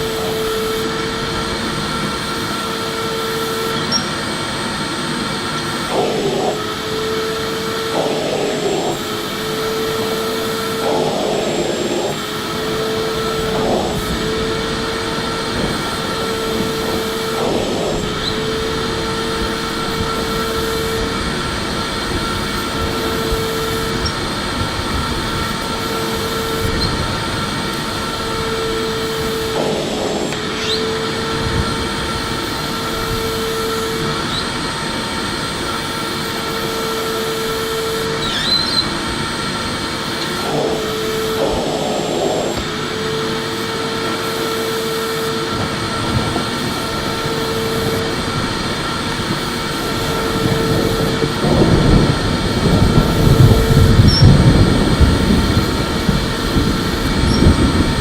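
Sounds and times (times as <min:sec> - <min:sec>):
vacuum cleaner running: 0:00.0 - 0:58.0.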